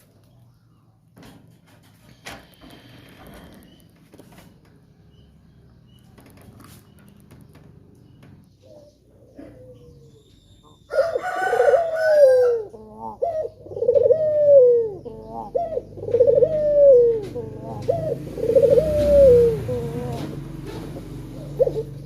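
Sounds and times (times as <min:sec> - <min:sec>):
dove cooing: 0:08.6 - 0:10.2, 0:10.9 - 0:22.0.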